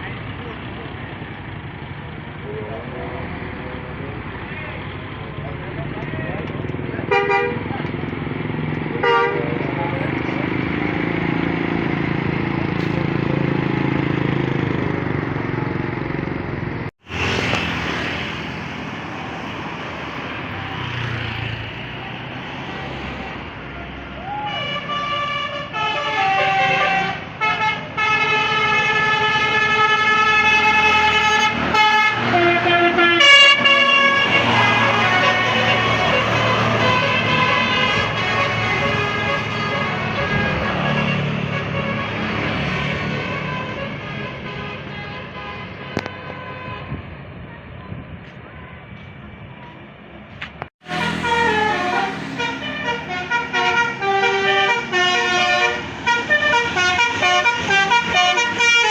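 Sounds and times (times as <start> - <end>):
bus engines and traffic: 0.0 - 58.9
musical bus horn tune: 7.1 - 7.7, 9.0 - 9.7, 24.5 - 47.0, 50.8 - 58.9.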